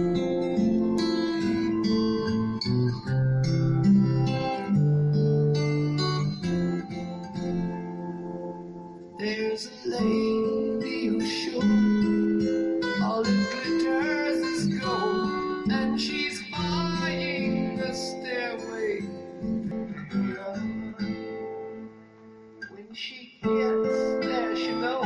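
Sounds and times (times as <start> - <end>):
acoustic guitar music: 0.0 - 25.0.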